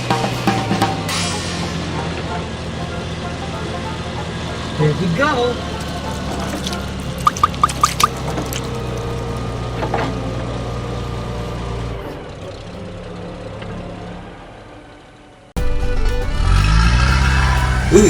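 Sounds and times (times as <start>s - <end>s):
vehicle engine droning: 0.0s - 18.0s
quick high beeps: 7.2s - 8.2s.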